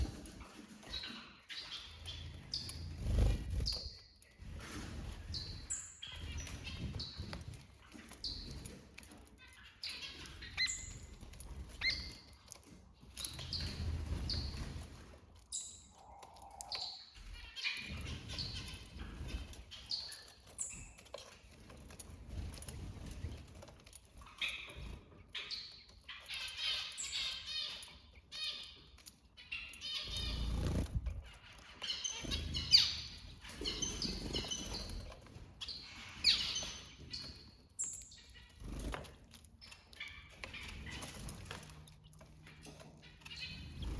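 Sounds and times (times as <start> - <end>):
small birds chirping: 0.0 - 43.9.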